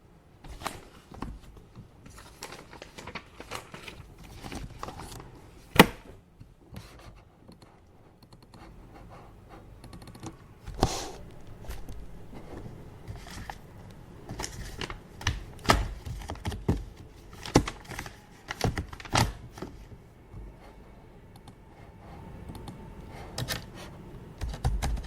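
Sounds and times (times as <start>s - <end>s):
paper rustling and sliding: 0.4s - 6.1s, 10.7s - 13.7s, 14.3s - 20.0s.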